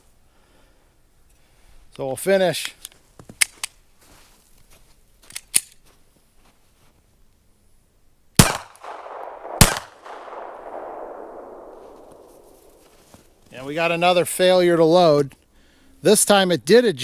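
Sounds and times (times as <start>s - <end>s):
gun handling metallic clicks: 2.6s - 3.8s, 5.2s - 5.8s
pistol shots with echo: 8.4s - 12.8s.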